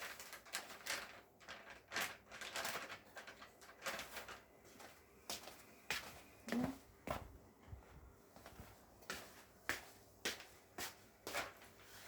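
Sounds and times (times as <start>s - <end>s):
wet wipes rustling and wiping: 8.2s - 12.0s.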